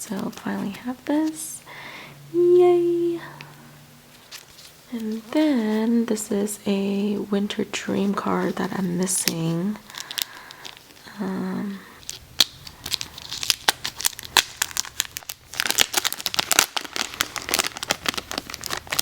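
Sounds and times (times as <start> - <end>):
packaging crinkling: 8.1 - 11.2, 11.8 - 19.0
packaging tearing: 9.1 - 11.1, 12.0 - 19.0.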